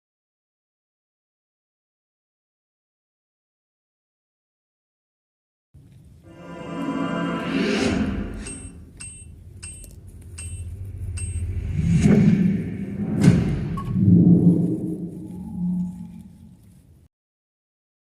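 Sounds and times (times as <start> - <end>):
pitched swell: 6.3 - 9.1
sharp high ticks: 8.4 - 11.8
heavy low booms: 10.8 - 15.9.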